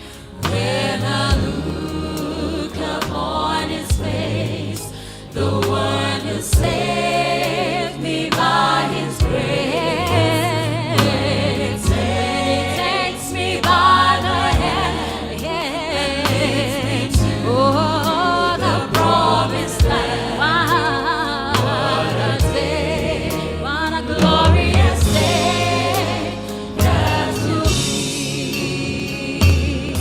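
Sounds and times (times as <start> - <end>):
band with drums: 24.2 - 30.0.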